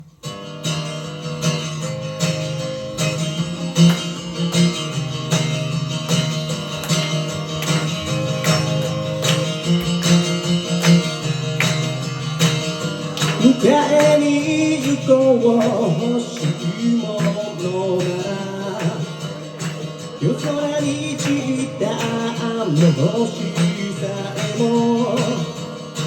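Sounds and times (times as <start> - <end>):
acoustic guitar strumming: 0.0 - 26.0.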